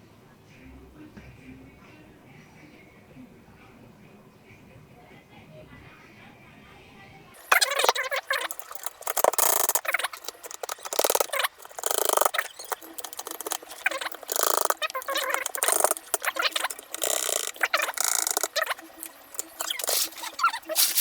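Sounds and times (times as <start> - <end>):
high scraping or rubbing: 7.5 - 21.0
keyboard plastic clicks: 7.5 - 21.0.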